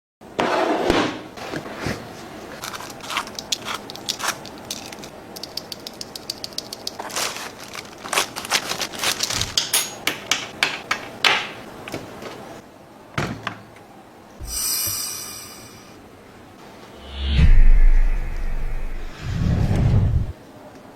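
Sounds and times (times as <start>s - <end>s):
mechanical keyboard keystrokes: 3.2s - 7.0s
short swishing noise: 17.0s - 20.3s.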